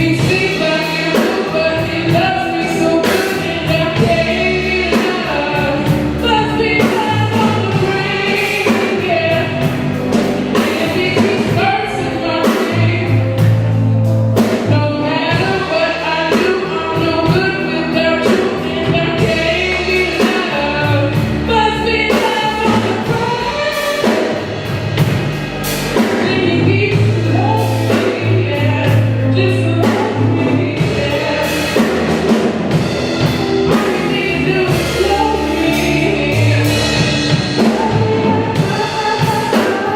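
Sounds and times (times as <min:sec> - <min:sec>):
bass line: 0:00.0 - 0:39.9
drum kit: 0:00.0 - 0:39.9
singers singing: 0:25.8 - 0:39.9.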